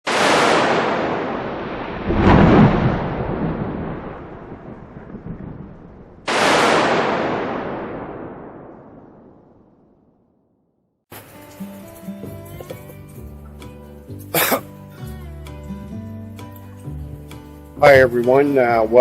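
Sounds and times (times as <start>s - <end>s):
thunder clap rumbling: 0.1s - 10.2s.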